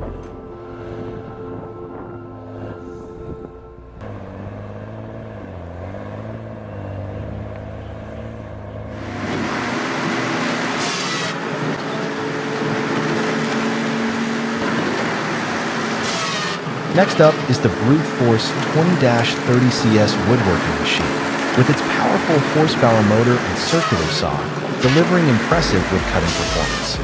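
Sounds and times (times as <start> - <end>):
harsh machine noise: 0.0 - 2.8, 8.8 - 27.0
machinery engine humming: 0.0 - 27.0.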